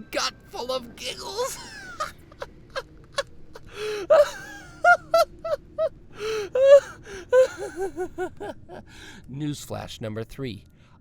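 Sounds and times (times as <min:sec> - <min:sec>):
man laughing hard: 0:01.6 - 0:05.9, 0:06.6 - 0:08.8.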